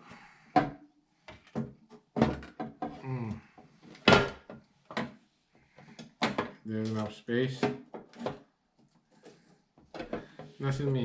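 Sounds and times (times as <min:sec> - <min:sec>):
murmured voice: 0:03.0 - 0:03.5
knocks and clicks of computer parts: 0:06.0 - 0:06.6.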